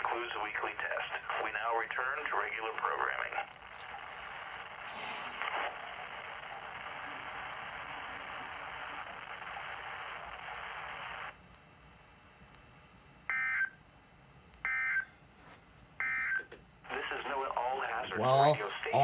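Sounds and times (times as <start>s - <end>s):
radio static hiss: 0.0s - 11.4s, 16.8s - 19.0s.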